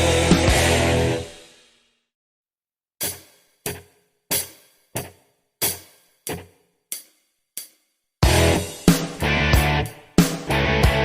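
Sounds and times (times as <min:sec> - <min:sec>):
loud band music with drums: 0:00.0 - 0:01.4, 0:08.2 - 0:11.0.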